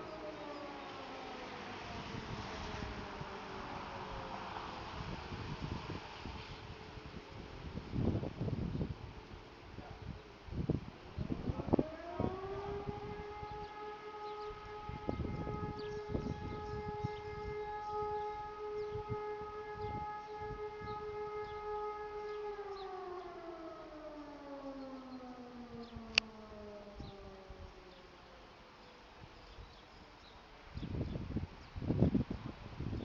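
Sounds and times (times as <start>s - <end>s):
motor-driven fire siren: 0.0s - 6.4s, 11.2s - 28.2s.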